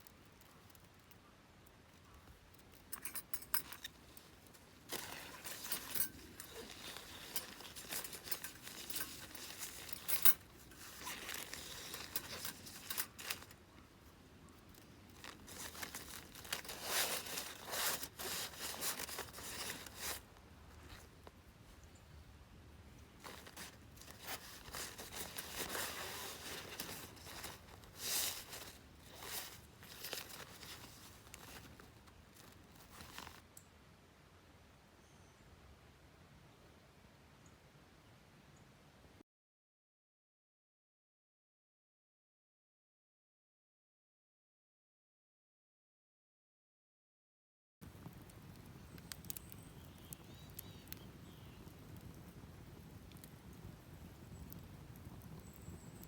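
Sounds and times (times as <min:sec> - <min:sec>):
material crinkling and rustling: 0:02.0 - 0:21.8, 0:23.0 - 0:33.4.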